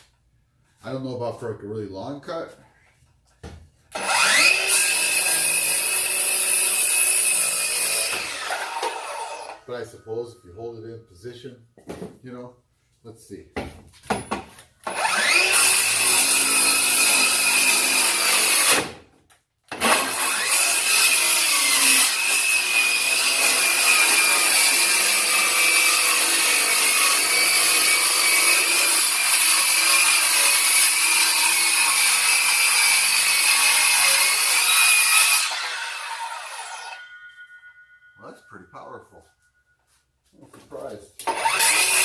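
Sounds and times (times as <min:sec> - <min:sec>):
circular saw cutting wood: 0:03.9 - 0:09.9, 0:14.8 - 0:18.9, 0:19.7 - 0:37.4, 0:41.2 - 0:42.0.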